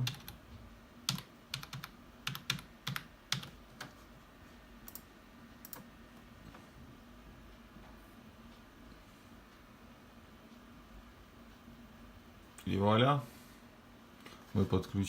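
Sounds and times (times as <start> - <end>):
computer keyboard typing: 0.0 - 0.4, 1.0 - 4.0, 4.8 - 5.9.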